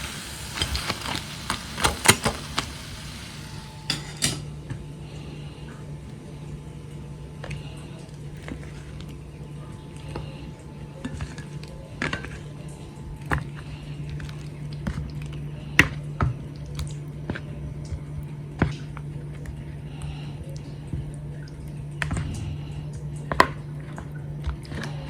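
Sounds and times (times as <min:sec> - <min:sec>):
utensils and dishes clinking: 0:00.0 - 0:04.8.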